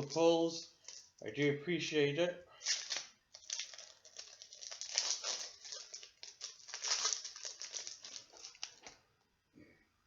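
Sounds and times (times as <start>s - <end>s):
wrapper tearing and crinkling: 2.6s - 9.0s.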